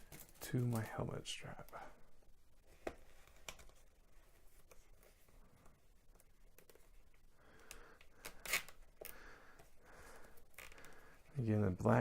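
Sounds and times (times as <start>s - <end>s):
zip tie rubbing: 8.1s - 9.1s.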